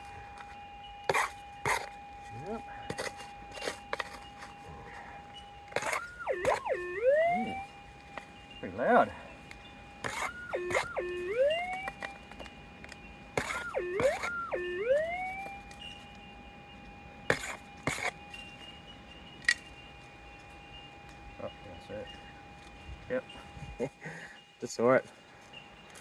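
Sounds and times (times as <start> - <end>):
metal detector tone swooping: 2.9 - 7.7, 10.0 - 12.2, 13.4 - 16.0.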